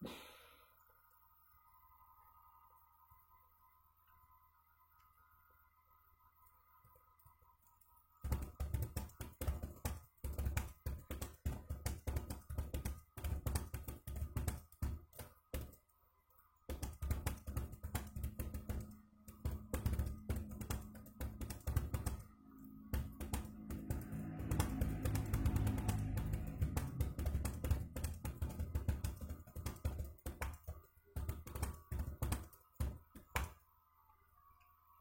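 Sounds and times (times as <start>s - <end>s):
faint background music: 1.0s - 35.0s
fast typing on keyboard: 8.2s - 15.9s, 16.7s - 33.5s.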